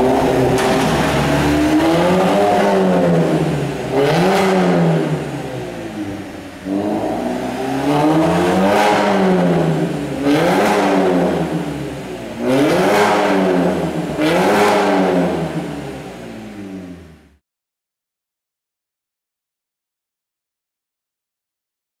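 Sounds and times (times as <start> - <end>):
car engine revving: 0.0 - 17.4.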